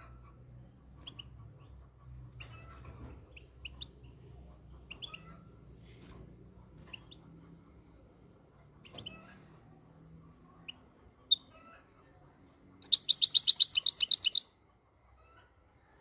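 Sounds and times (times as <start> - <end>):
bird chirps: 0.5 - 4.2, 4.8 - 5.4, 12.8 - 14.6
fast high bird trill: 12.8 - 14.5.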